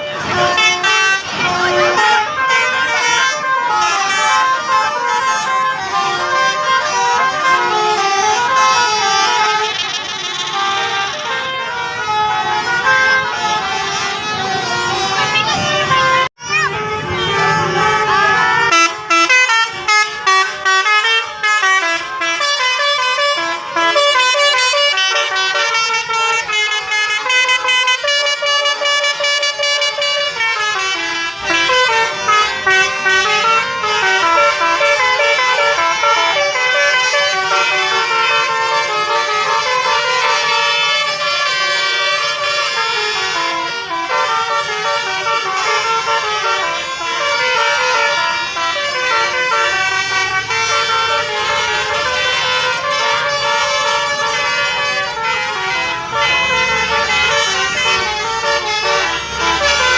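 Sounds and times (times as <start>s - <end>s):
musical bus air horns: 0.0s - 59.9s.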